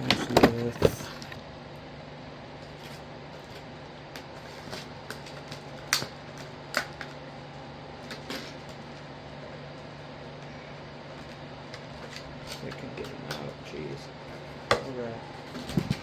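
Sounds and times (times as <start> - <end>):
steady low hum: 0.0 - 16.0
packaging clicks and crackles: 2.7 - 7.2, 8.0 - 9.0, 11.1 - 13.6.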